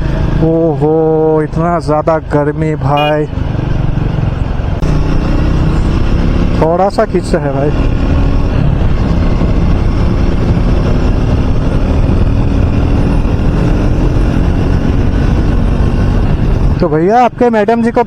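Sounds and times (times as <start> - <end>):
motorcycle engine running: 0.0 - 16.6
wind rumble on microphone: 7.6 - 17.2.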